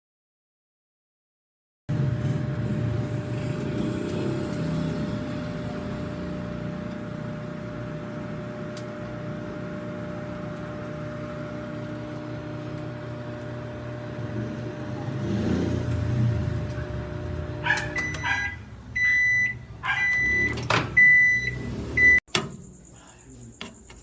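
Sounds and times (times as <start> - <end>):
microwave oven humming: 1.9 - 24.0.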